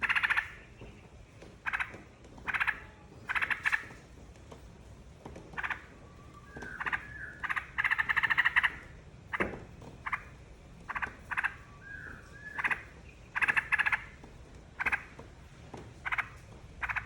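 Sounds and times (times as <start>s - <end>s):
bird chattering calls: 0.0s - 4.0s, 5.6s - 15.2s, 16.0s - 17.0s
bird whistled slurs: 11.6s - 12.6s.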